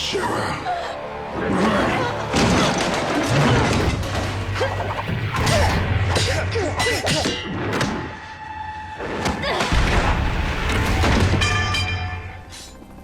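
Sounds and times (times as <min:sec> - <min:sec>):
low droning music score: 0:00.0 - 0:13.0.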